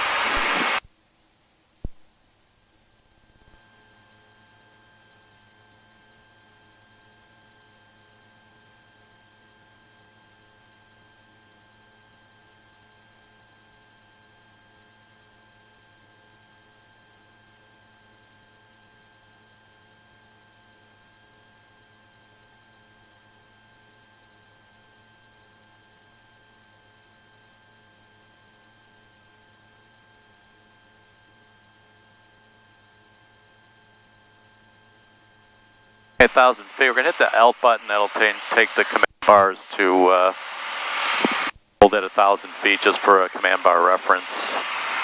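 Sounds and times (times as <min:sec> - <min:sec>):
electrical buzz and whine: 0:00.0 - 0:00.8, 0:35.1 - 0:45.0
faint low hum: 0:36.2 - 0:45.0.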